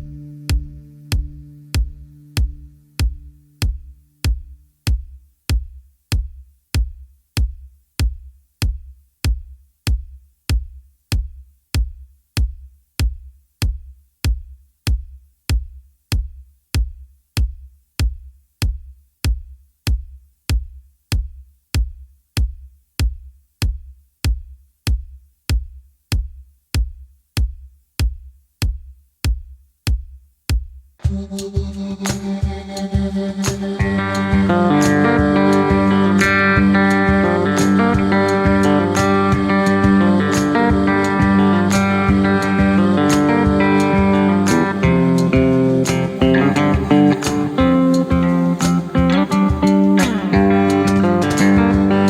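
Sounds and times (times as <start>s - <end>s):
kick drum beating: 0.0s - 31.7s.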